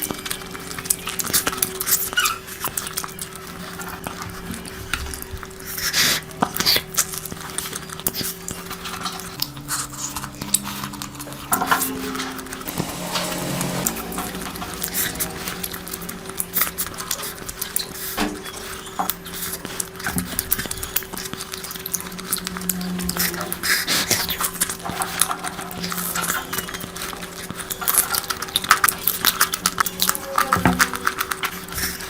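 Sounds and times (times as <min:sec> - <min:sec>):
wet chewing and mouth smacking: 0:00.0 - 0:11.5, 0:17.2 - 0:32.0
steady low hum: 0:07.1 - 0:18.6.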